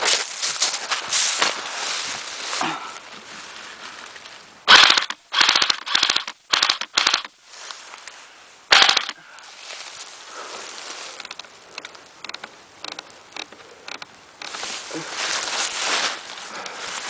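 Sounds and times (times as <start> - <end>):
airsoft gun automatic fire: 4.7 - 7.3, 8.7 - 9.2.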